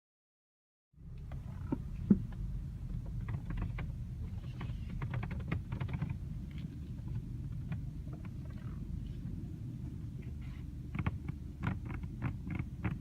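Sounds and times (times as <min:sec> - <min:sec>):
road rumble inside moving car: 0:01.0 - 0:13.0
creaking clicks from car doors: 0:01.2 - 0:08.8.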